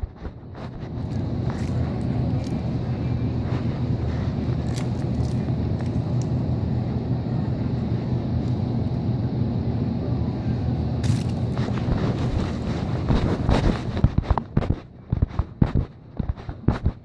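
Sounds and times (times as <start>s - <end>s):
microphone rubbing on fabric: 0.0s - 2.0s, 11.6s - 17.0s.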